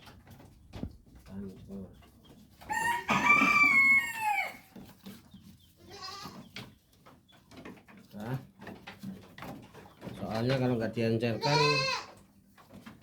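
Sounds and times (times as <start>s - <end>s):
goat kid bleating: 5.8s - 6.5s, 11.3s - 12.2s.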